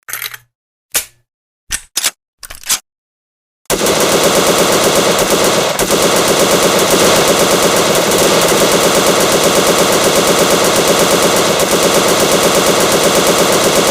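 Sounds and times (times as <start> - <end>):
machine gun firing full-auto: 3.7 - 13.9.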